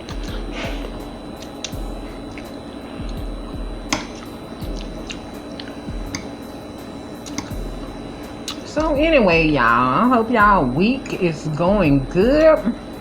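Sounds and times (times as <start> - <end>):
wet chewing and smacking: 0.0 - 6.3, 7.2 - 7.7, 8.4 - 8.7
mouth clicks: 0.0 - 6.5, 7.1 - 9.6.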